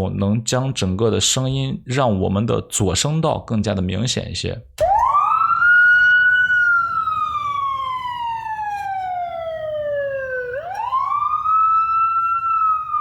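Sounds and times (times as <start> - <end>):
siren wail with doppler shift: 4.8 - 13.0.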